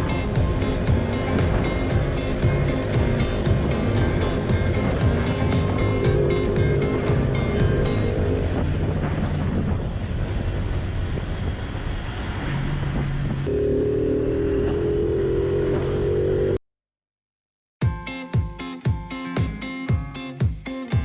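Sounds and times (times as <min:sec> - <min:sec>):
motorcycle engine running: 0:00.0 - 0:11.4
wind on microphone: 0:00.0 - 0:13.5.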